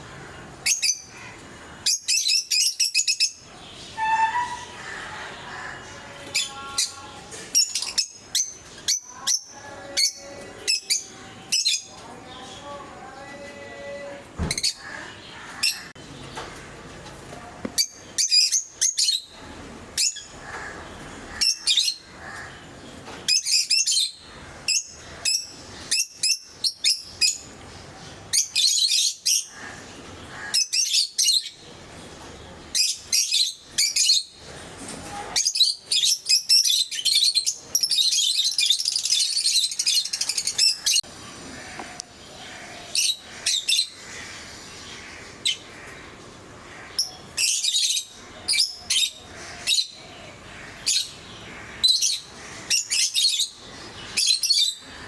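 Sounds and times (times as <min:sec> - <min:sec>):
lovebirds chirping: 0:00.0 - 0:16.6, 0:35.4 - 0:55.0.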